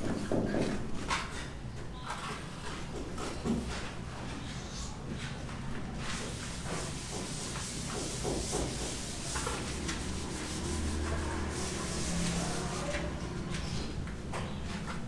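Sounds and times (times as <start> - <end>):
rubbing against a surface: 6.0 - 13.9.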